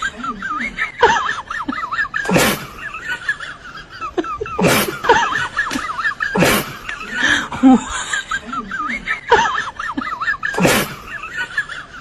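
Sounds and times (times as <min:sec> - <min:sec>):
sharp bursts of noise: 0:02.2 - 0:03.3, 0:04.6 - 0:07.3, 0:10.5 - 0:11.4.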